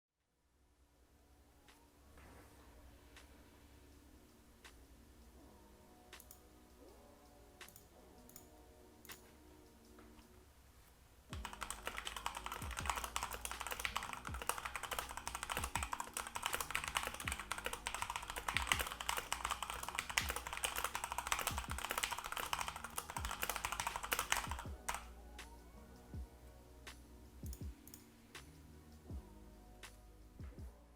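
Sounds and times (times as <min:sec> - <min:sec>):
mechanical keyboard typing: 0:11.4 - 0:25.1.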